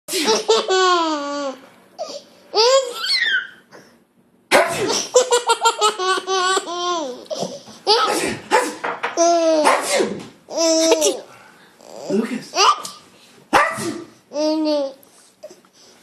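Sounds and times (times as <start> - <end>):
babies laughing and squealing: 0.4 - 3.7.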